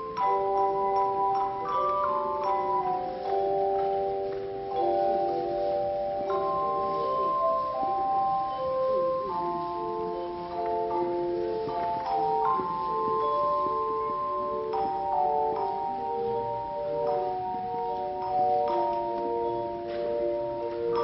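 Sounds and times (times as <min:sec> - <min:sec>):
tone chimes playing melody: 0:00.0 - 0:21.0.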